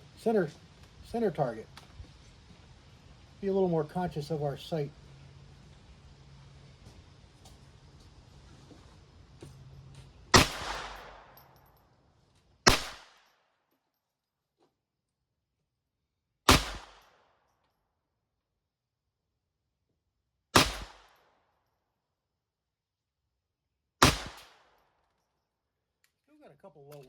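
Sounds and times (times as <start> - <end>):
pistol shots: 10.3 - 11.4, 12.7 - 13.2, 16.5 - 17.2, 20.6 - 21.2, 24.0 - 24.8.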